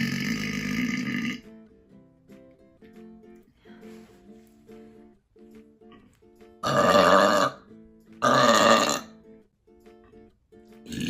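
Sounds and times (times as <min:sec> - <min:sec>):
person burping loudly: 0:00.0 - 0:01.5, 0:06.6 - 0:09.2
quiet acoustic guitar music: 0:00.0 - 0:11.0.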